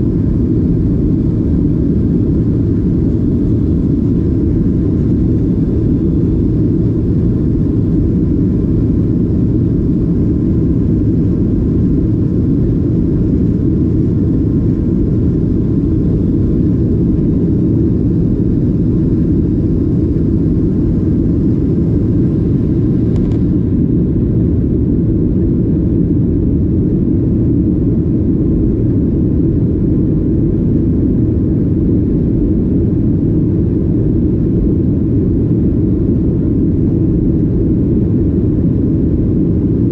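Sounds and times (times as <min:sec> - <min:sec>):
airliner cabin engine rumble: 0:00.0 - 0:39.9
faint click: 0:23.1 - 0:23.4.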